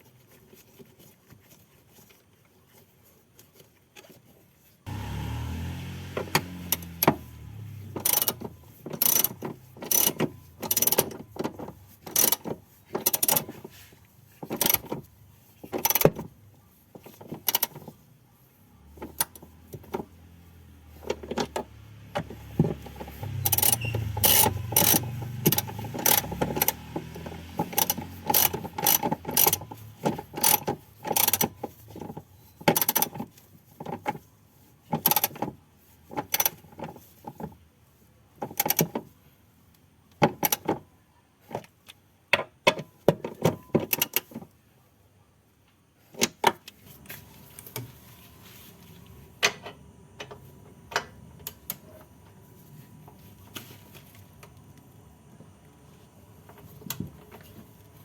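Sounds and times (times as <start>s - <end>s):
ratchet wrench clicking: 8.0s - 8.4s, 9.0s - 11.2s, 12.1s - 12.4s, 23.4s - 26.8s, 27.7s - 29.6s.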